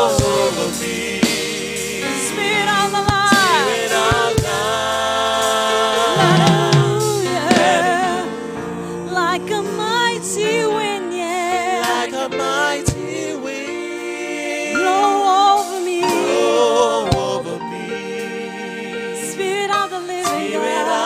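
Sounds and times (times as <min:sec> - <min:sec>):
held accompaniment chords: 0:06.0 - 0:12.0
person singing with vibrato: 0:06.0 - 0:12.4.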